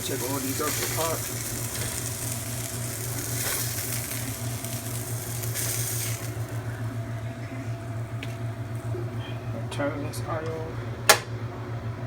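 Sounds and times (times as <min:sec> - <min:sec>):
sausages sizzling in a pot: 0:00.0 - 0:09.2
steady low hum: 0:00.0 - 0:12.0.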